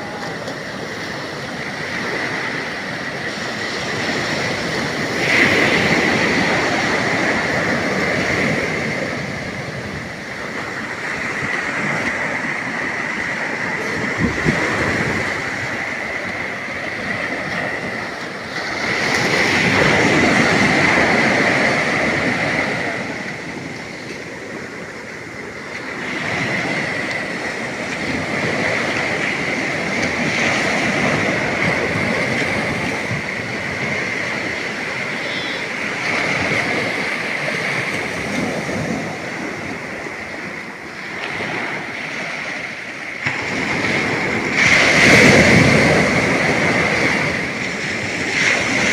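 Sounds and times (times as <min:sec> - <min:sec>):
ocean surf breaking on beach: 0:00.0 - 0:48.9
high-pitched tone: 0:35.1 - 0:35.8.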